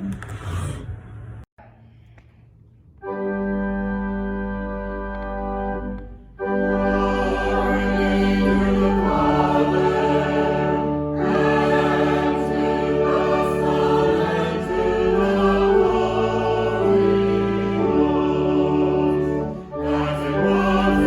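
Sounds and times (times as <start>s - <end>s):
choir singing: 6.6s - 21.0s.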